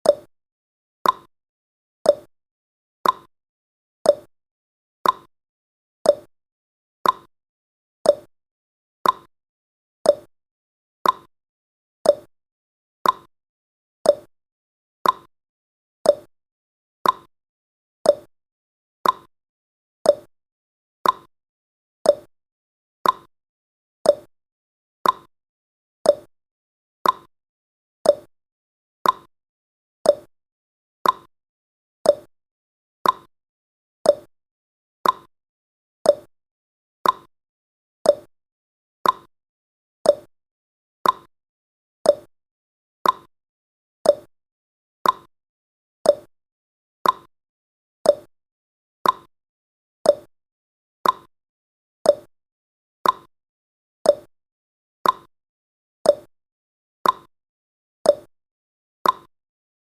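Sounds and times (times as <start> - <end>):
timer ticking: 1.0 - 1.3, 2.1 - 2.3, 3.0 - 3.3, 4.1 - 4.3, 5.0 - 5.3, 6.1 - 6.3, 7.0 - 7.3, 8.1 - 8.3, 9.0 - 9.3, 10.1 - 10.3, 11.0 - 11.3, 12.1 - 12.3, 13.0 - 13.3, 14.1 - 14.3, 15.0 - 15.3, 16.1 - 16.3, 17.0 - 17.3, 18.1 - 18.3, 19.0 - 19.3, 20.1 - 20.3, 21.0 - 21.3, 22.1 - 22.3, 23.0 - 23.3, 24.1 - 24.3, 25.0 - 25.3, 26.1 - 26.3, 27.0 - 27.3, 28.0 - 28.3, 29.0 - 29.3, 30.0 - 30.3, 31.0 - 31.3, 32.1 - 32.3, 33.0 - 33.3, 34.1 - 34.3, 35.0 - 35.3, 36.1 - 36.3, 37.0 - 37.3, 38.1 - 38.3, 39.0 - 39.3, 40.1 - 40.3, 41.0 - 41.3, 42.1 - 42.3, 43.0 - 43.3, 44.0 - 44.3, 45.0 - 45.3, 46.1 - 46.3, 47.0 - 47.3, 48.1 - 48.3, 49.0 - 49.3, 50.1 - 50.3, 51.0 - 51.3, 52.1 - 52.3, 53.0 - 53.3, 54.1 - 54.3, 55.0 - 55.3, 56.1 - 56.3, 57.0 - 57.3, 58.1 - 58.3, 59.0 - 59.3.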